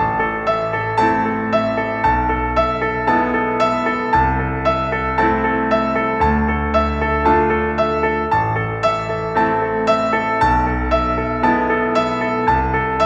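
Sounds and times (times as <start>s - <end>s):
gentle piano music: 0.0s - 13.0s.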